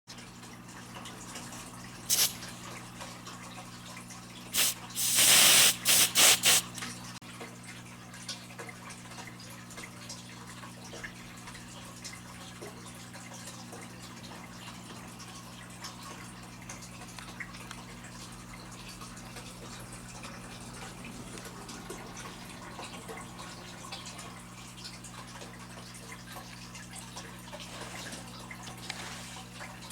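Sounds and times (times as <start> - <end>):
aerosol spray hissing: 2.1 - 2.4, 4.6 - 6.6.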